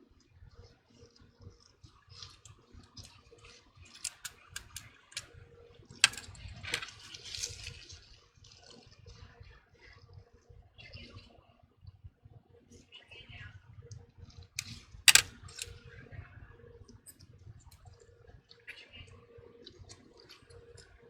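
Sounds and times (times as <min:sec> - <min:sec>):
tools and phone parts clicking: 0:03.9 - 0:05.3, 0:06.0 - 0:07.8, 0:14.6 - 0:15.8.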